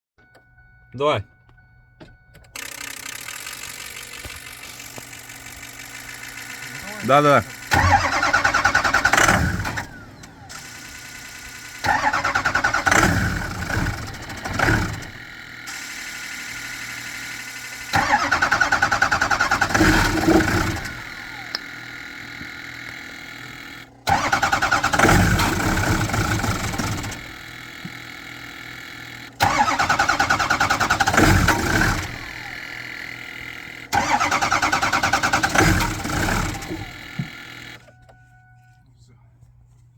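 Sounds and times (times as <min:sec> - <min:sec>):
starter motor cranking engine: 0:02.5 - 0:37.9
steady quiet hum: 0:37.9 - 0:39.9.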